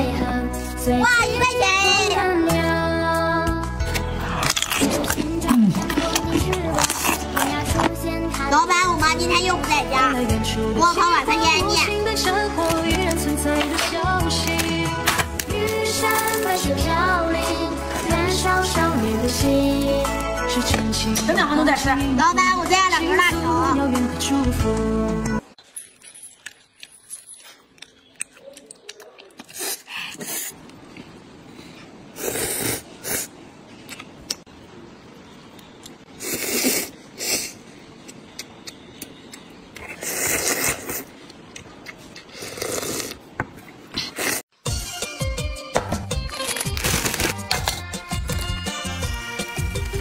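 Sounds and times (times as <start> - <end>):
pop song: 0.0 - 3.9, 4.9 - 8.5, 9.4 - 25.4.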